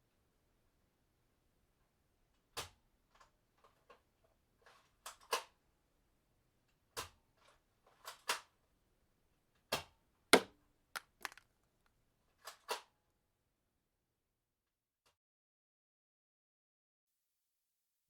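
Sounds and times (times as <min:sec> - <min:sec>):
sharp gunshot clicks and snaps: 0:10.4 - 0:11.4.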